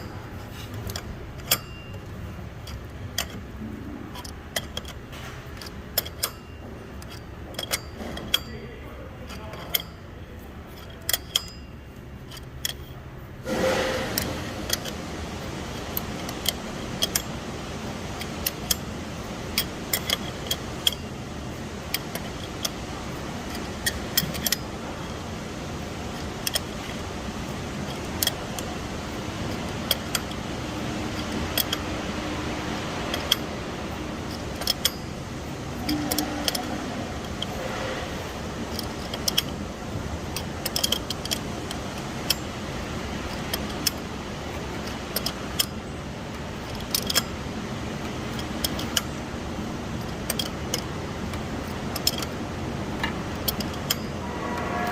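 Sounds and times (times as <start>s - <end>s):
metallic wrench clicks: 0.0s - 13.1s, 14.2s - 15.0s, 15.7s - 21.2s, 21.8s - 30.5s, 31.1s - 33.6s, 34.2s - 37.8s, 38.6s - 49.2s, 49.8s - 54.9s
steady hissing: 13.4s - 20.9s.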